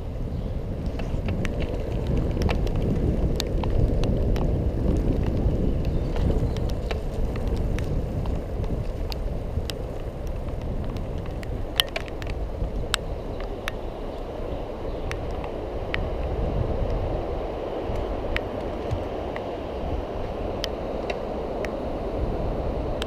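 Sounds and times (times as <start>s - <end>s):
scooter wheels rumbling: 0.0s - 23.0s
wind on microphone: 0.0s - 23.0s
sharp clicks and ticks: 0.9s - 13.8s.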